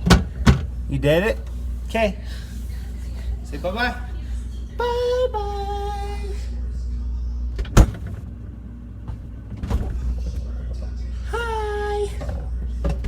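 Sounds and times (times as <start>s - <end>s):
refrigerator door shutting: 0.0s - 0.7s, 7.5s - 8.4s, 9.0s - 10.5s
steady low hum: 0.0s - 13.0s.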